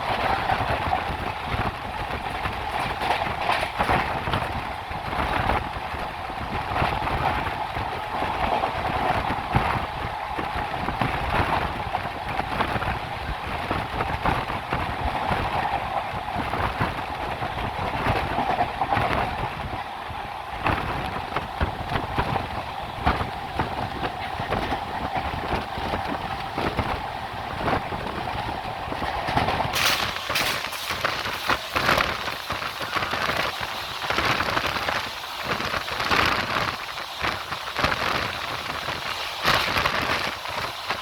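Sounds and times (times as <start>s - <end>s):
train wheels clattering: 27.6s - 41.0s
harsh hiss with crackles: 29.7s - 41.0s.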